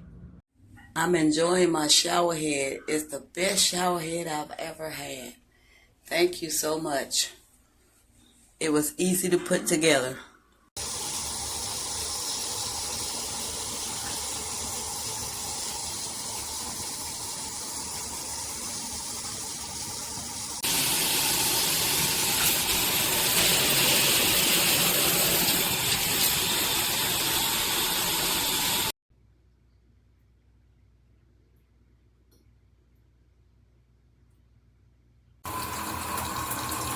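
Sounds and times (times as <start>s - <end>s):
shower head spraying water: 10.8s - 28.9s.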